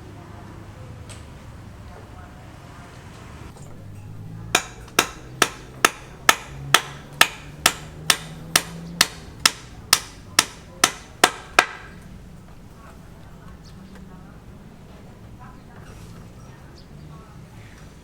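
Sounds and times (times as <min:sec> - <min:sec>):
hammer blows with ringing tail: 0:03.9 - 0:11.8.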